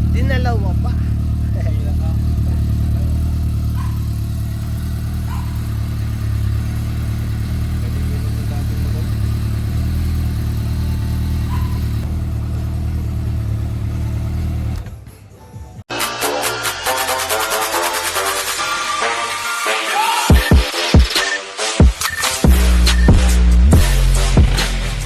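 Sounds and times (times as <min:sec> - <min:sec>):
motorcycle engine idling: 0:00.0 - 0:15.8.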